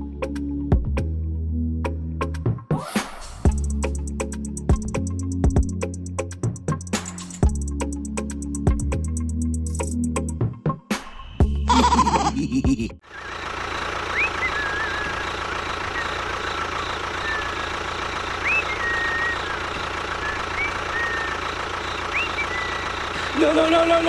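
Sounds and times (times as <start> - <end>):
small motor running: 13.1 - 24.0
short high chirps: 14.2 - 23.2.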